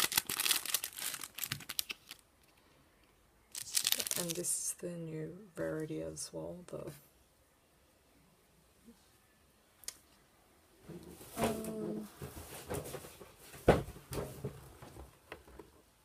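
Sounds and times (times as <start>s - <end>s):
trading cards rustling: 0.0s - 2.6s, 3.5s - 4.5s.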